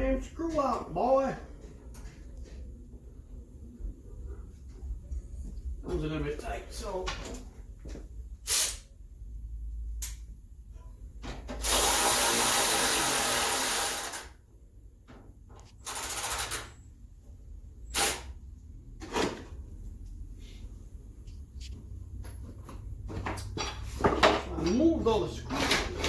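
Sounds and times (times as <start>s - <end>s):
cordless power drill running: 11.6s - 14.4s.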